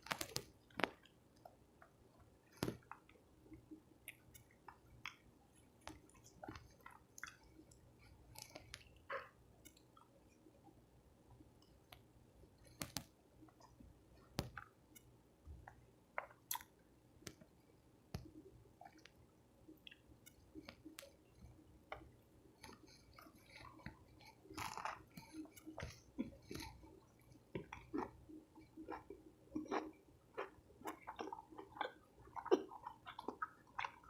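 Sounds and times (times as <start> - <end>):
person chewing: 0.0 - 10.2, 15.6 - 16.8, 21.9 - 34.0.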